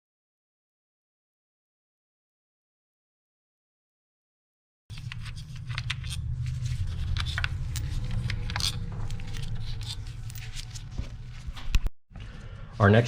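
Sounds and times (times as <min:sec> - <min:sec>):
hand tools clicking and scraping: 0:04.9 - 0:11.9
steady low rumble: 0:04.9 - 0:12.3.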